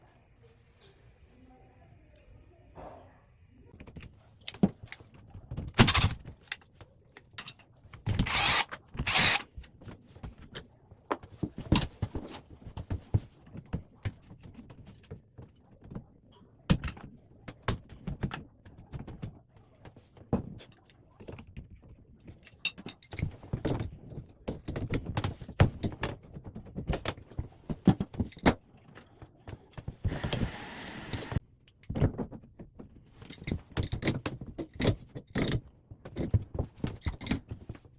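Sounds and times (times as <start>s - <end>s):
metal parts and tools clinking: 5.8s - 6.2s, 8.2s - 9.4s.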